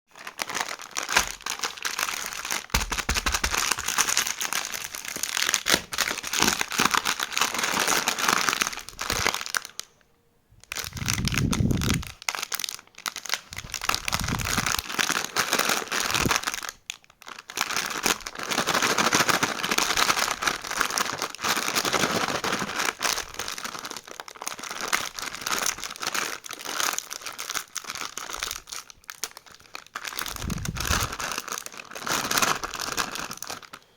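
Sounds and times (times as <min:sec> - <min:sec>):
plastic snack packet crinkling: 0:00.1 - 0:10.0, 0:10.6 - 0:33.9.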